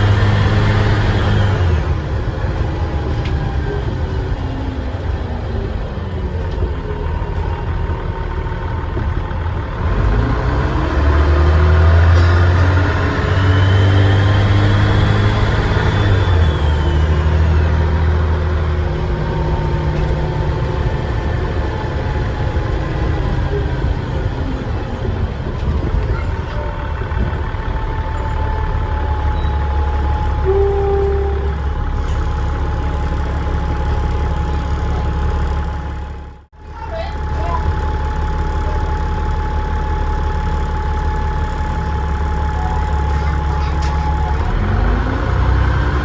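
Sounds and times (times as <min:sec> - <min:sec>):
bus engine accelerating: 0:00.0 - 0:46.0.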